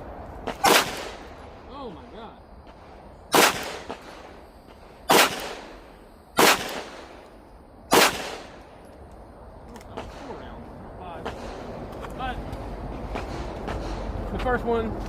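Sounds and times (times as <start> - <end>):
pistol shots with echo: 0.4 - 1.6, 3.3 - 4.4, 5.0 - 7.3, 7.9 - 8.7.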